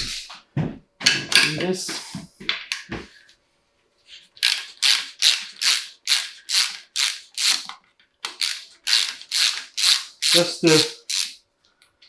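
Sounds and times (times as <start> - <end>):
ratchet wrench clicking: 4.4 - 7.7, 8.3 - 11.4.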